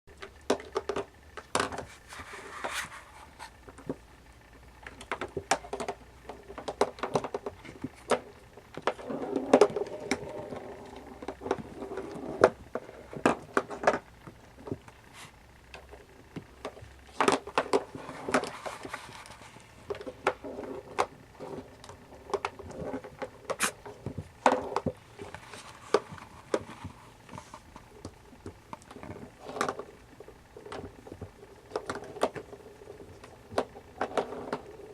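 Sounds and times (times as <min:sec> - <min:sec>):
kittens tapping and scuffling: 0:04.8 - 0:34.9
rustling: 0:14.6 - 0:34.9.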